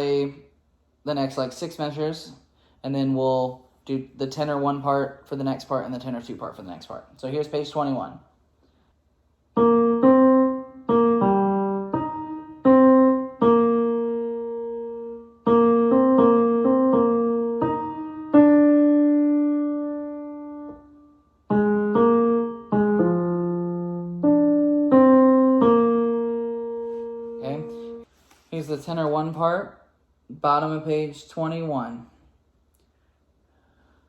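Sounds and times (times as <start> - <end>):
piano playing: 9.6 - 28.1.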